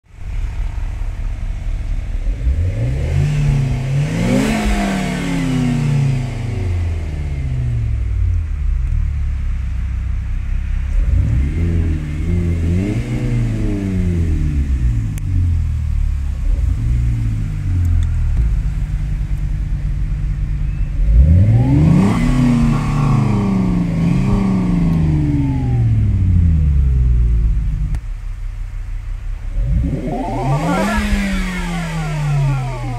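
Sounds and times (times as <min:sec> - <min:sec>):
car engine idling and revving: 0:00.0 - 0:32.9.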